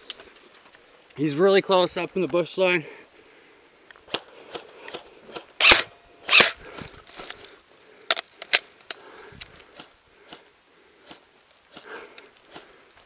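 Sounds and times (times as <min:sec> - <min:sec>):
airsoft gun shots: 0:05.6 - 0:06.6.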